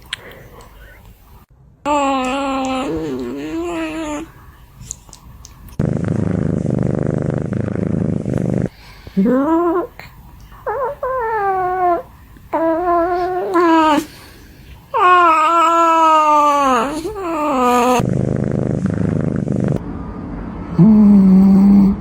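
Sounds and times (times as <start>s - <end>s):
cat purring: 2.3s - 4.4s, 5.8s - 14.4s, 16.8s - 19.8s.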